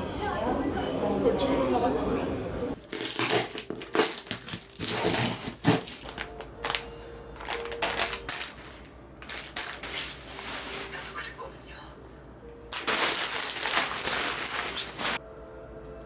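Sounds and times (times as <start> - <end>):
crinkling and rustling: 2.8 - 11.2, 12.7 - 15.2.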